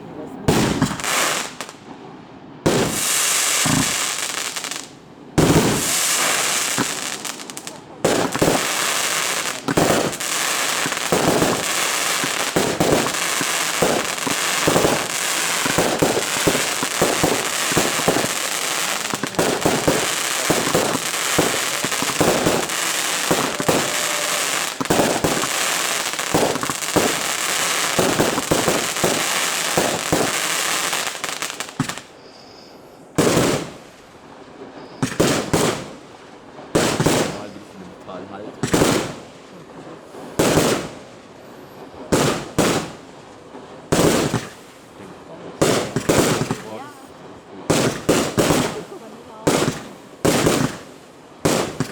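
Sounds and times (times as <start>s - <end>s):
fireworks bangs and crackle: 0.4s - 2.0s, 2.6s - 32.2s, 33.1s - 51.9s.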